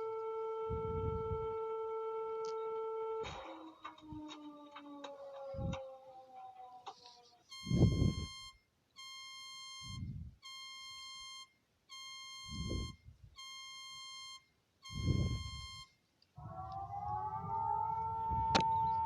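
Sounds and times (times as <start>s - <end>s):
rising siren-like chord: 0.0s - 6.9s, 16.4s - 19.0s.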